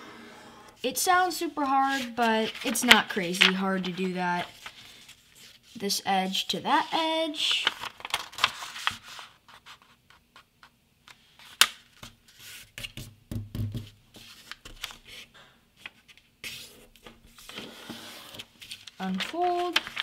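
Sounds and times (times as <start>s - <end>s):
paper rustling and folding: 1.4s - 5.8s, 6.8s - 10.5s, 13.8s - 20.0s.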